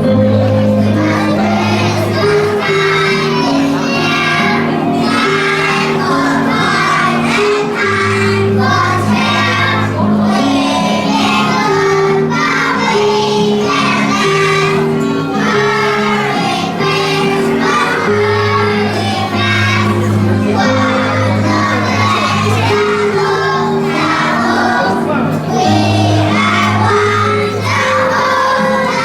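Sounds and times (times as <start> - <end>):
children singing together: 0.0 - 29.0
instrumental music: 0.0 - 29.0.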